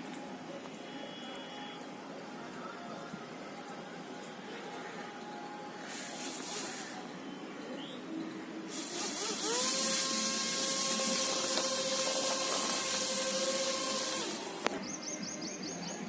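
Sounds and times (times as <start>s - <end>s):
small motor whining: 5.9s - 7.0s, 8.7s - 14.9s.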